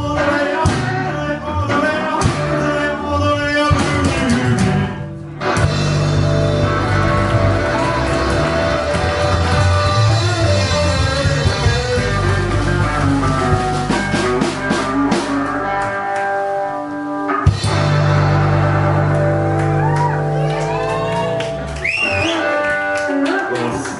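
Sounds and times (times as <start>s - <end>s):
person singing: 0.0s - 5.2s
rockabilly band playing: 0.0s - 23.9s.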